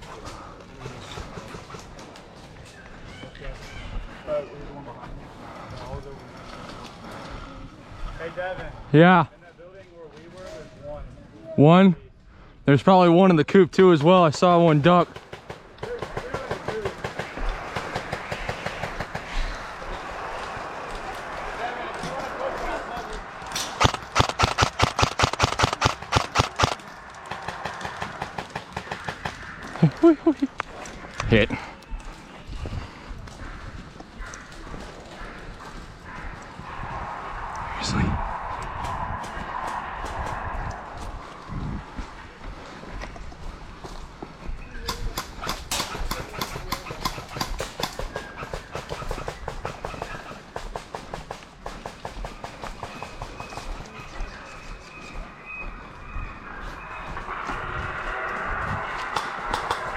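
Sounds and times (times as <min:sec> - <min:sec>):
running footsteps: 0:19.2 - 0:28.3
airsoft gun firing: 0:23.6 - 0:29.4
low rumble of movement: 0:35.2 - 0:43.6.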